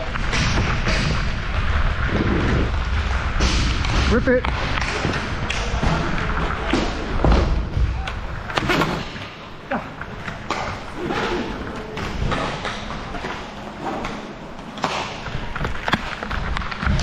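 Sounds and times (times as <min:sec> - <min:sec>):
hockey sticks and puck knocking: 0:02.7 - 0:17.0
skates scraping on ice: 0:08.2 - 0:17.0.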